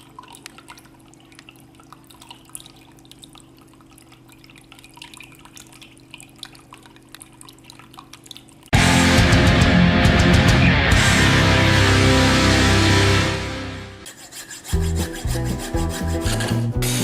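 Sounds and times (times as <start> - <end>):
water dripping into basin: 0.0 - 8.8.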